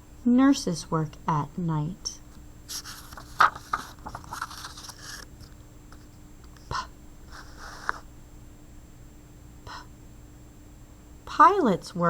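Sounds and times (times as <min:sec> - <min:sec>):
faint steady hum: 0:00.0 - 0:12.0
paper page rustling: 0:02.7 - 0:06.7, 0:07.3 - 0:08.1.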